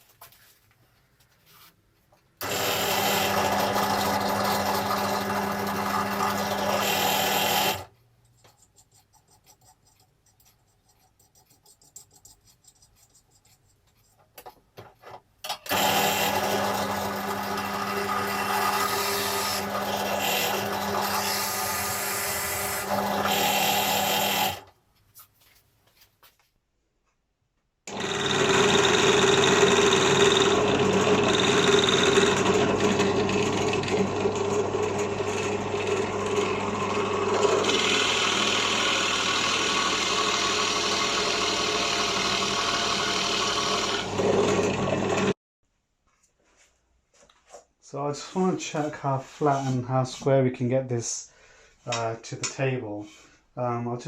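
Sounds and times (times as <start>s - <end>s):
drill press humming: 2.4s - 7.9s, 15.6s - 24.7s, 27.9s - 45.4s.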